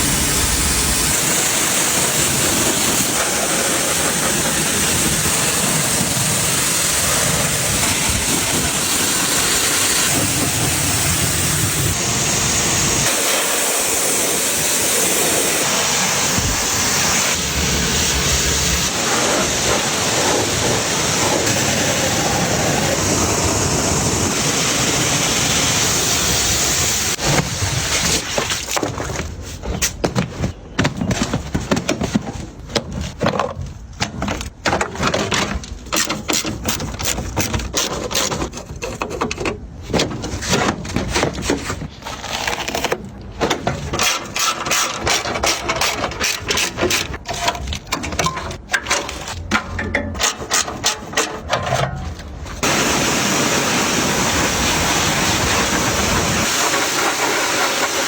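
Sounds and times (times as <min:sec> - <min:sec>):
rushing hiss: 0:00.0 - 0:28.4, 0:52.6 - 0:58.0
knocks and scrapes: 0:27.2 - 0:52.6.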